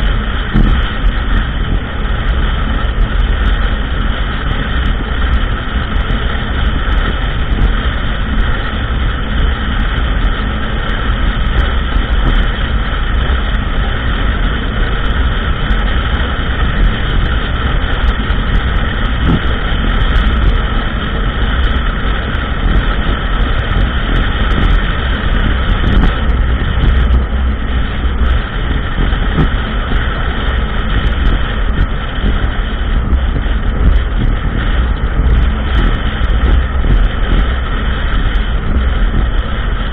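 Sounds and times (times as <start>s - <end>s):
atv engine rumbling: 0.0s - 39.9s.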